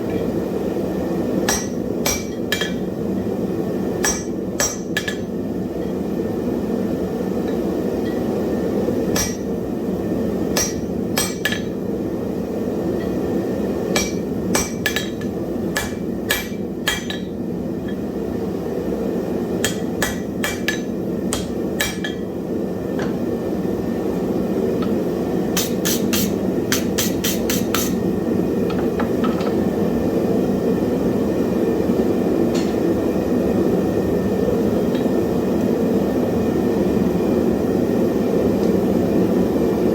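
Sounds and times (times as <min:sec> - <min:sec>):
hammer striking iron on anvil: 0:01.4 - 0:02.9, 0:04.0 - 0:05.4, 0:09.1 - 0:09.6, 0:10.5 - 0:11.8, 0:13.9 - 0:18.0, 0:19.6 - 0:22.3, 0:25.6 - 0:28.0.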